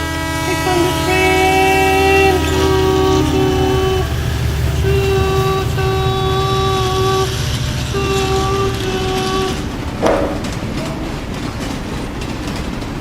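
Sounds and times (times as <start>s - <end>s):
toy train whistle: 0.0s - 9.7s
constant low rumble: 0.0s - 13.0s
short sudden sound: 0.8s - 10.5s.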